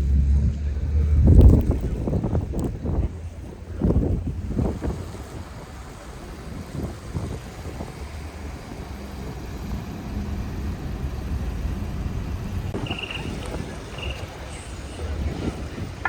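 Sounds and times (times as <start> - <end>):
passing street traffic: 0.0 - 16.0
wind buffeting microphone: 0.0 - 16.0
high chirp: 12.8 - 14.3.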